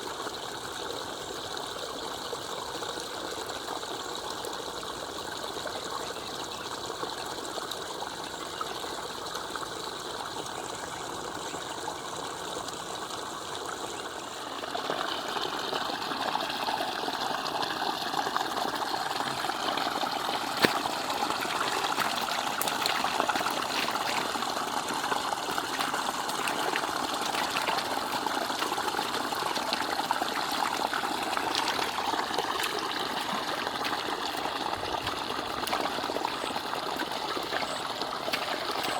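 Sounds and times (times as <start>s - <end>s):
water running: 18.7s - 38.9s.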